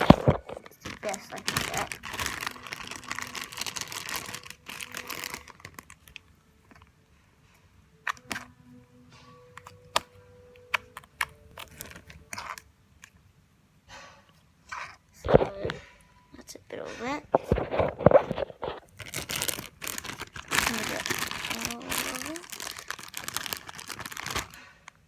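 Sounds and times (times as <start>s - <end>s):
slime squishing and crackling: 0.0s - 6.2s, 10.7s - 12.7s, 17.4s - 25.0s.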